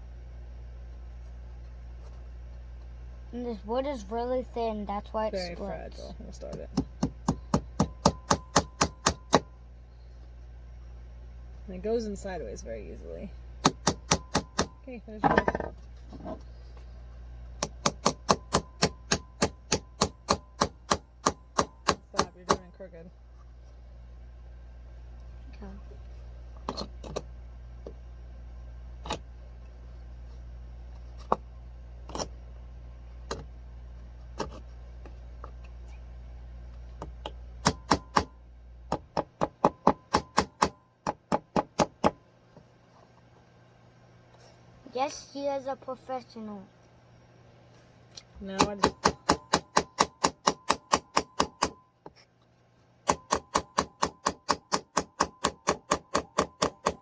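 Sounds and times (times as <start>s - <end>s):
steady low hum: 0.0s - 57.0s
hammer striking nail into wood: 6.8s - 9.5s, 13.6s - 14.8s, 17.6s - 22.7s, 37.2s - 42.2s, 48.6s - 51.8s, 53.0s - 57.0s.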